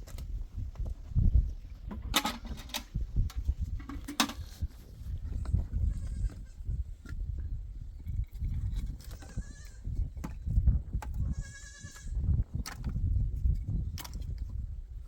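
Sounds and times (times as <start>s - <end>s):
livestock bleating: 11.3s - 12.2s.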